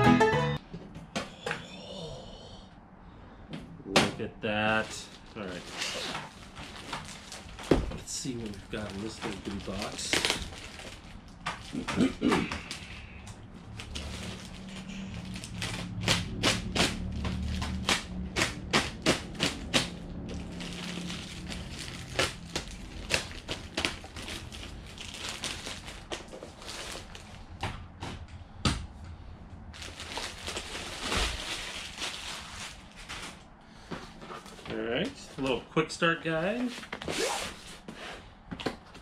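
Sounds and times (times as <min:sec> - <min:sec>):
packaging rustling and crinkling: 0:04.6 - 0:13.0, 0:13.6 - 0:27.6, 0:29.7 - 0:35.4, 0:36.5 - 0:38.0.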